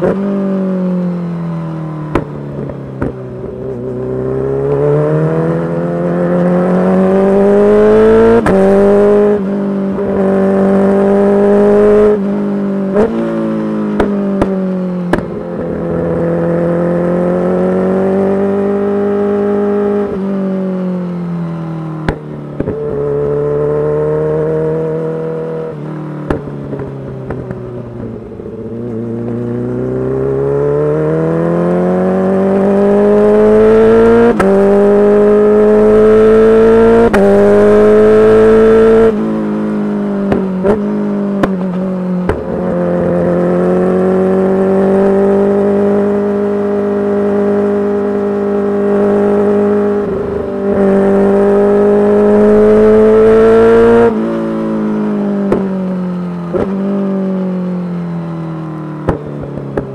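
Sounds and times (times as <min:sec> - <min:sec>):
motorcycle engine revving: 0:00.0 - 0:59.9
exhaust pops: 0:41.4 - 0:42.8.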